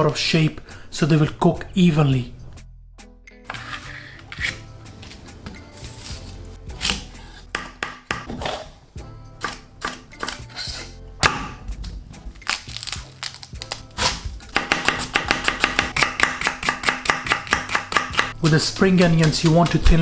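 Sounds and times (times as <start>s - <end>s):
background music: 0.0s - 20.0s
knife chopping on cutting board: 14.0s - 18.4s.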